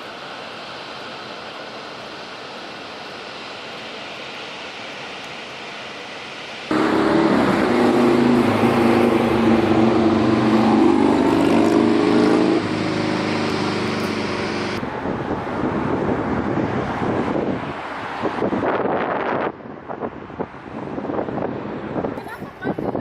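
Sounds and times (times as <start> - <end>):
road and wind noise: 0.0 - 23.0
vehicle engine running: 6.7 - 14.8.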